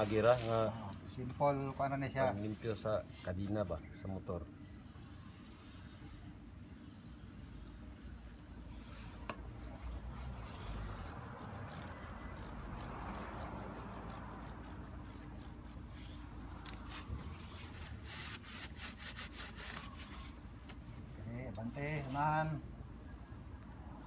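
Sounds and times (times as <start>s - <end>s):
stiff brush scrubbing chain: 10.6s - 16.1s.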